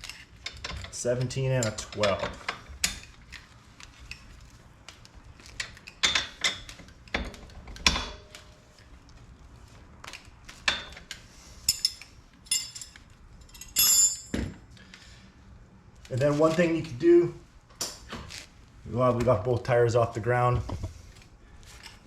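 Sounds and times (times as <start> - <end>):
metal tools clinking: 11.7 - 14.4.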